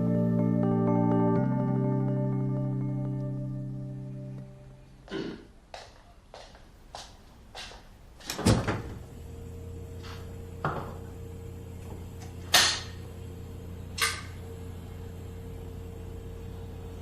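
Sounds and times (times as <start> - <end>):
steady low hum: 0.0 - 5.4, 8.0 - 17.0
door shutting with heavy thud: 8.2 - 9.1.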